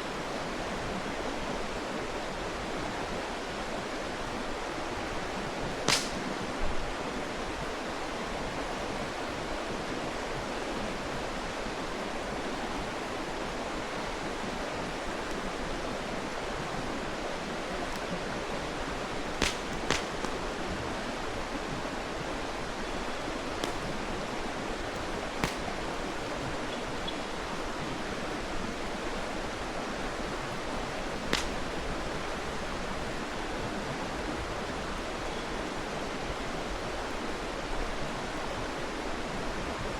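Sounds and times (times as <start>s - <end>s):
campfire wood popping: 5.8s - 6.6s, 19.0s - 21.5s, 22.7s - 27.5s, 30.1s - 32.5s.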